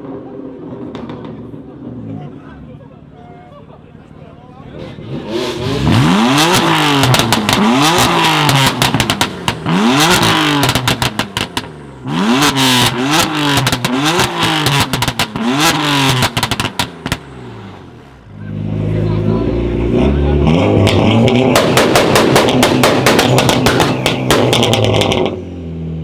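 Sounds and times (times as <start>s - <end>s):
exhaust pops and crackles: 0.7s - 1.6s, 5.9s - 18.0s, 20.6s - 25.4s
sports car engine revving: 4.7s - 26.0s.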